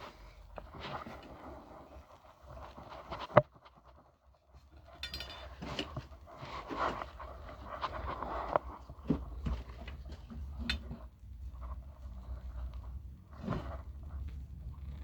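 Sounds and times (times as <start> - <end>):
rustling: 5.6 - 15.0.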